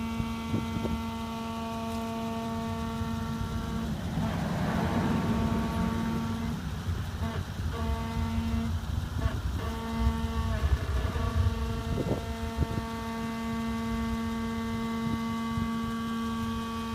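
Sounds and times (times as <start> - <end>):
brakes buzzing hum: 0.0 - 16.9
low rumble: 1.9 - 14.4.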